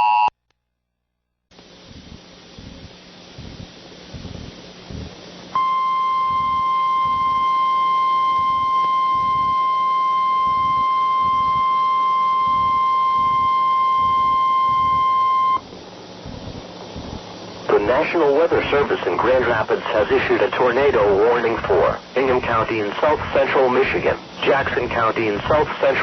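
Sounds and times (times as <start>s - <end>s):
steady high beep: 5.6s - 15.6s.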